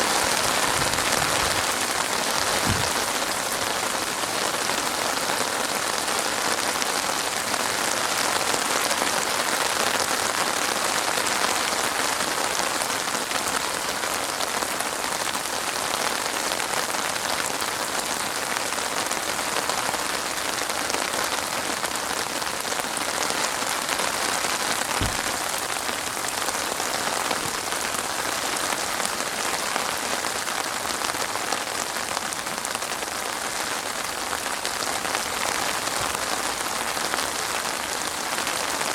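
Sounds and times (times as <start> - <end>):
steady rain falling: 0.0 - 38.9
brief low thud: 2.6 - 3.1, 25.0 - 25.5.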